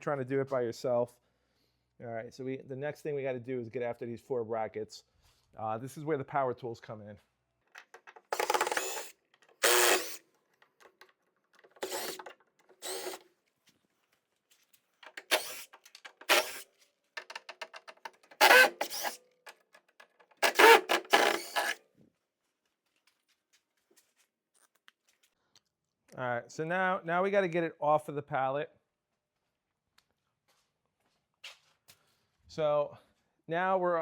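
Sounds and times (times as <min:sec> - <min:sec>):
cordless power drill bursts: 0:08.3 - 0:10.2, 0:11.6 - 0:13.2, 0:15.1 - 0:16.7, 0:18.3 - 0:19.2, 0:20.4 - 0:21.8.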